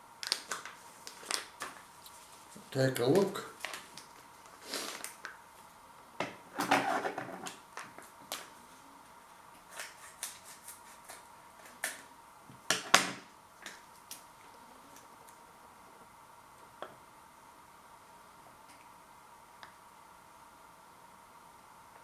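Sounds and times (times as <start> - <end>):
food packaging crinkling: 0.2 - 2.5.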